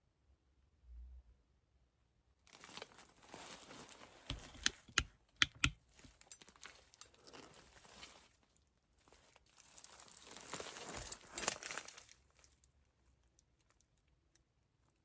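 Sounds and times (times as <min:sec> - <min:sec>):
crinkling and rustling handling: 0:02.5 - 0:15.0
sharp clicks: 0:04.3 - 0:05.8.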